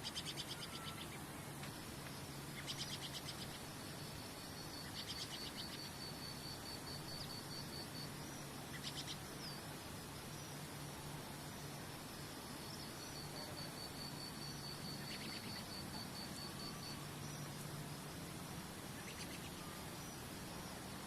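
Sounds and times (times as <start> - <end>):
background hiss: 0.0 - 21.0
insects trilling: 0.0 - 21.0.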